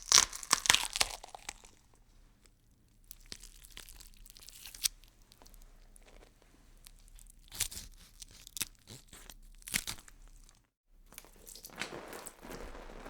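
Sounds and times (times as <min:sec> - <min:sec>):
faint crinkling crackle: 0:01.7 - 0:07.4, 0:10.0 - 0:13.0.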